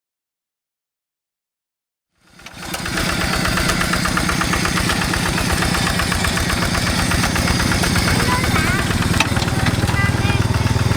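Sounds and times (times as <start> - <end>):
hand tractor diesel engine chugging: 2.3 - 10.9.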